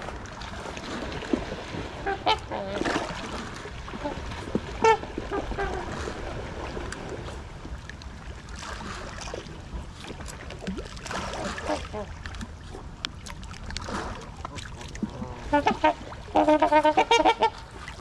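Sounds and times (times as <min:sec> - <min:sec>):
swans honking: 0:02.0 - 0:02.8, 0:04.8 - 0:06.0, 0:15.4 - 0:17.6.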